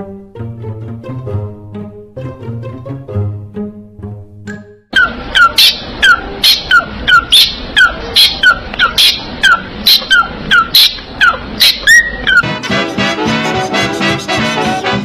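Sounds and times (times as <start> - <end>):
parrot making sharp calls: 5.0 - 12.5.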